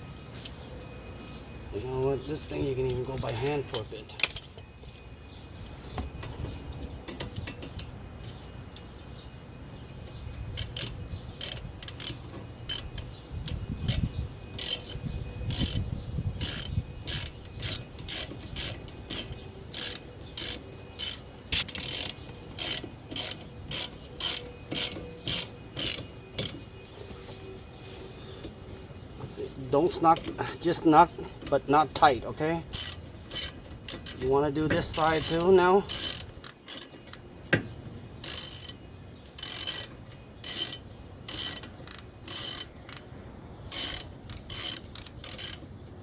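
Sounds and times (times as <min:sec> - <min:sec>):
hand ratchet clicking: 0:10.5 - 0:27.0, 0:31.4 - 0:37.6, 0:38.2 - 0:43.1, 0:43.7 - 0:45.8.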